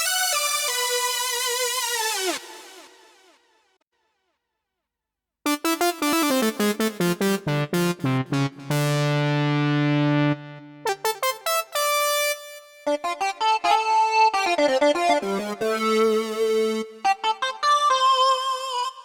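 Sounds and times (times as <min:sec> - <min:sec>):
synthesizer keyboard playing: 0:05.5 - 0:18.3.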